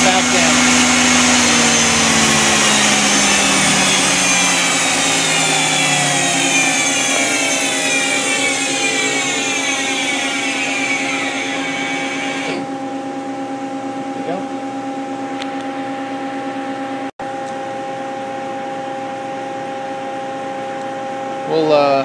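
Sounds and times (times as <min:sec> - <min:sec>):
lathe spindle whine falling: 0:00.0 - 0:12.8
steady machine hum: 0:00.0 - 0:17.1.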